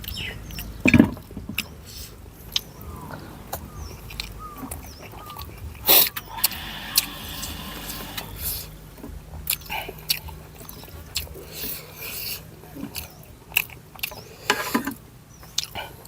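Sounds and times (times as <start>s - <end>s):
person slurping soup: 5.9s - 8.7s.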